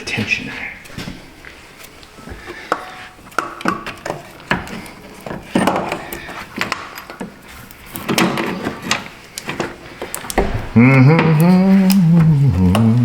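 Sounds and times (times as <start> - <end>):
tools and metal parts clinking: 3.6 - 7.3.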